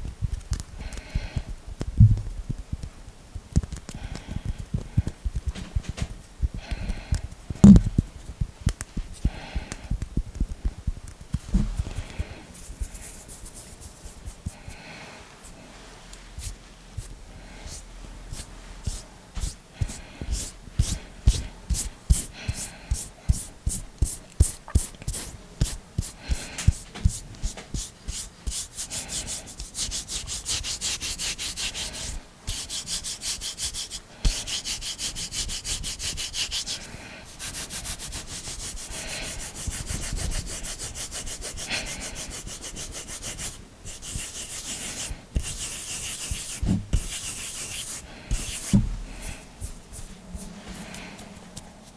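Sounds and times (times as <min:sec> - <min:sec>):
hands rubbing: 0:18.3 - 0:51.9.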